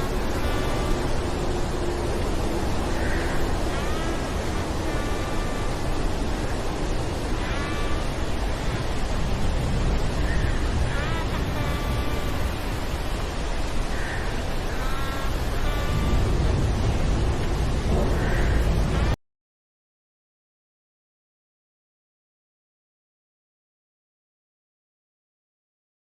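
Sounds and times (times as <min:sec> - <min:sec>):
deep rumbling storm noise: 0:00.0 - 0:19.2.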